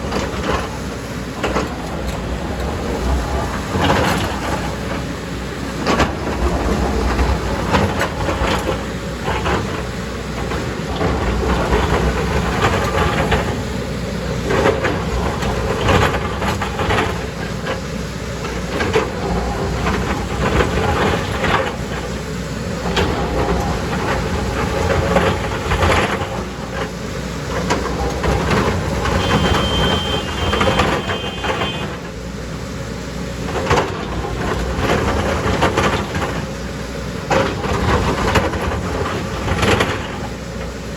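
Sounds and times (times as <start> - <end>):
excavator diesel engine: 0.0 - 40.9
short high beeping: 29.2 - 31.8.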